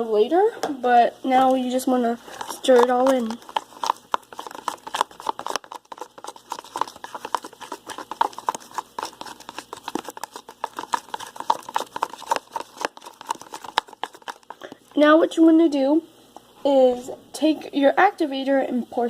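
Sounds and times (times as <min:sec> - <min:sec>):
plastic spoon stirring foamy mix: 0:01.2 - 0:15.2.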